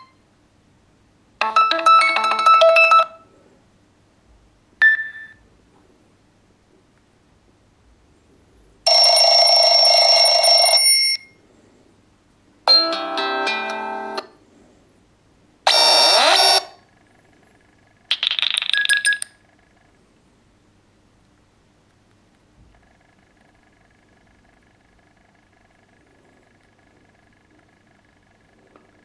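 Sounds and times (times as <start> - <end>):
phone ringtones: 1.4 - 3.2, 8.9 - 11.4, 15.7 - 16.7, 18.2 - 19.4.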